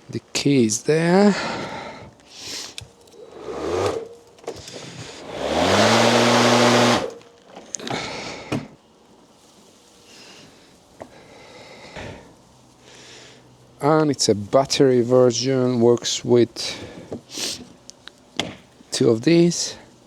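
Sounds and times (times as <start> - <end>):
lawnmower motor whining: 3.1 - 7.3.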